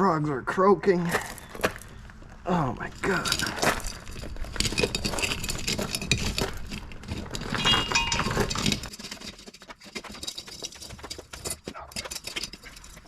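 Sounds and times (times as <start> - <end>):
metal clanking and clinking: 2.9 - 13.0.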